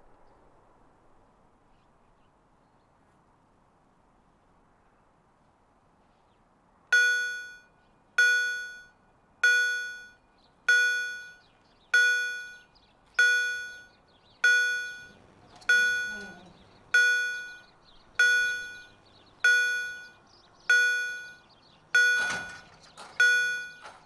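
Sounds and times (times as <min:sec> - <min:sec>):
level crossing warning bell: 0:06.9 - 0:24.0.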